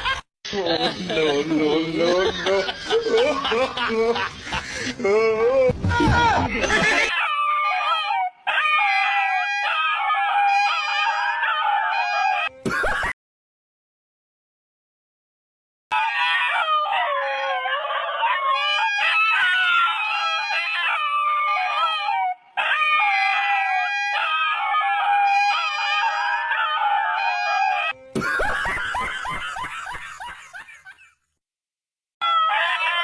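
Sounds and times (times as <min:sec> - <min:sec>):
dog howling and whining: 0:06.0 - 0:12.6, 0:15.9 - 0:28.0, 0:32.2 - 0:33.0.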